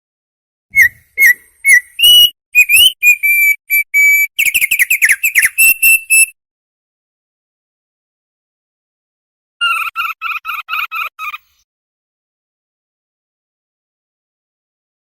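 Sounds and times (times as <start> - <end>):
songbird whistling: 0.7 - 6.4.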